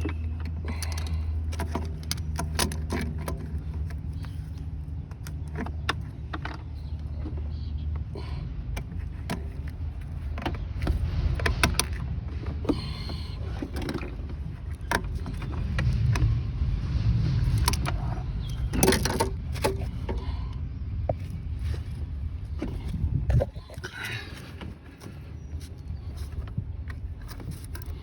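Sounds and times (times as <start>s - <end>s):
tools clinking in engine bay: 0.0s - 16.3s, 18.7s - 20.4s
low rumble: 3.5s - 28.0s.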